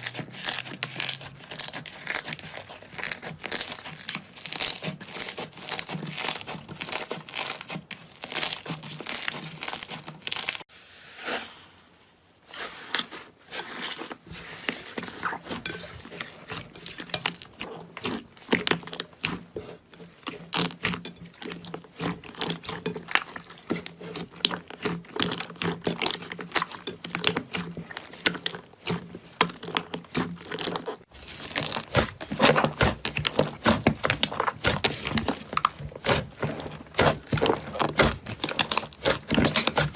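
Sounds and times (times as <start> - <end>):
slime crackling and popping: 0.0 - 10.6, 24.3 - 39.9.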